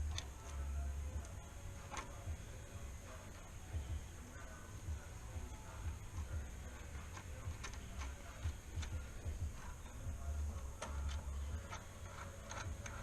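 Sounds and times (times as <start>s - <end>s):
hand tools clicking: 6.7s - 9.0s, 10.6s - 13.0s.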